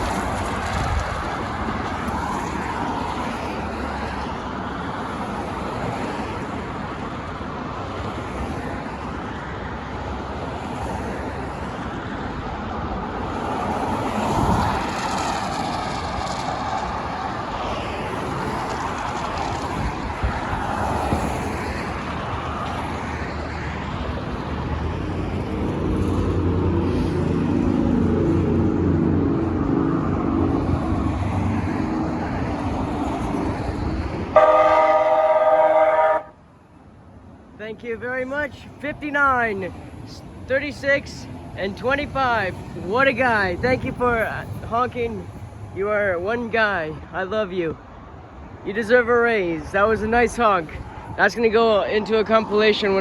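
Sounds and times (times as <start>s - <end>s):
train rumble: 0.0s - 4.3s, 12.6s - 36.4s
train whine: 25.0s - 36.4s
train horn: 34.3s - 36.4s.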